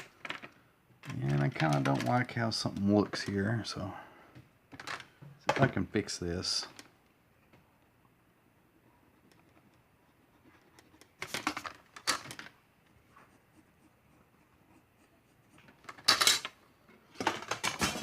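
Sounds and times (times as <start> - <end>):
faint room hum: 0.0 - 18.0
pencil scratching on paper: 9.1 - 11.1, 13.0 - 16.0.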